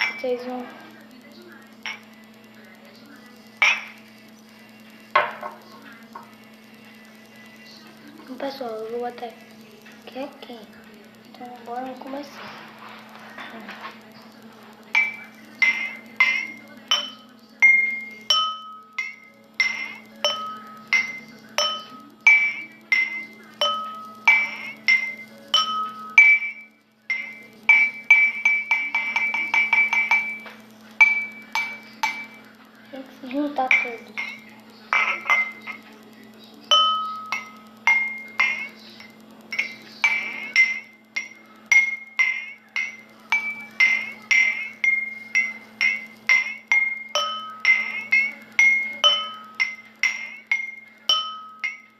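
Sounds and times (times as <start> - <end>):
water glasses tapped and ringing: 15.0 - 32.4, 36.7 - 51.9.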